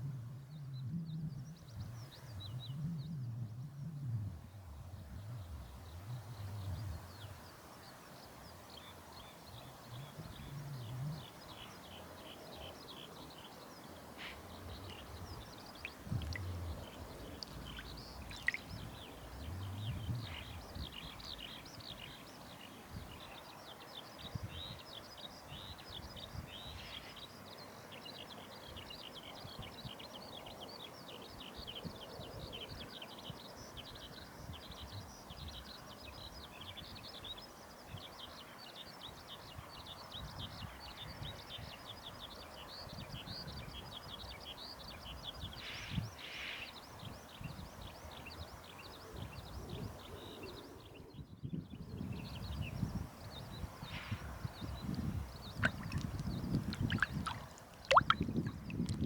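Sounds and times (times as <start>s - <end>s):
small birds chirping: 8.8s - 29.1s, 39.6s - 59.0s.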